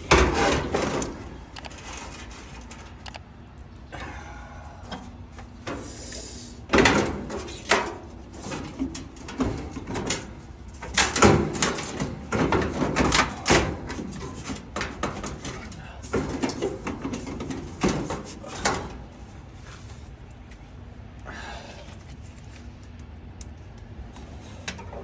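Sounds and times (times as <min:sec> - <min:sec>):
metal parts scraping: 0:00.0 - 0:03.2, 0:05.0 - 0:19.3.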